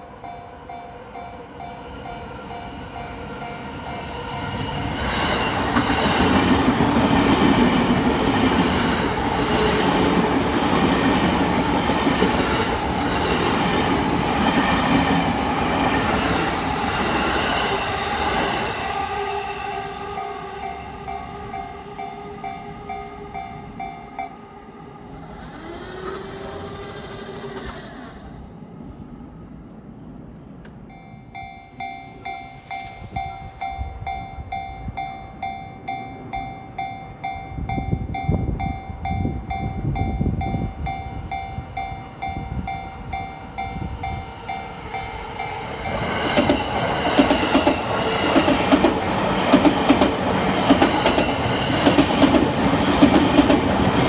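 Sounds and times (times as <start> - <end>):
train wheels clacking over rail joints: 45.8 - 54.0.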